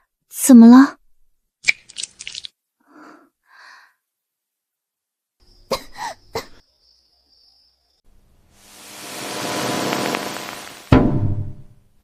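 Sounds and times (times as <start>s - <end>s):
woman coughing: 5.7s - 6.6s.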